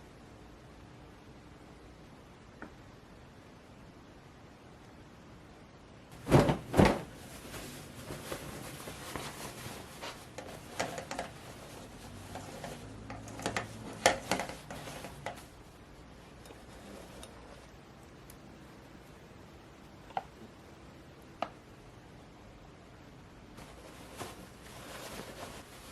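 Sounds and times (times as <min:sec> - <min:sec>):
containers clattering and rustling: 0:06.2 - 0:15.6, 0:23.6 - 0:25.9.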